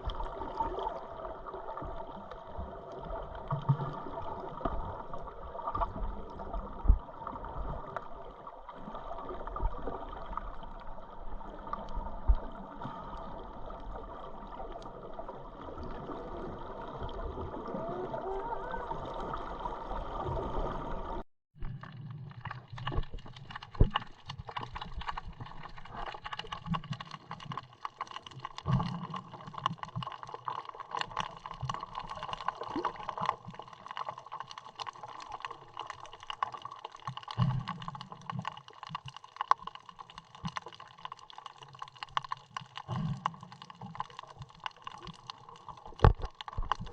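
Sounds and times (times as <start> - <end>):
underwater water wash and gurgling: 0.0 - 46.9
crackle of short underwater clicks: 22.4 - 46.9.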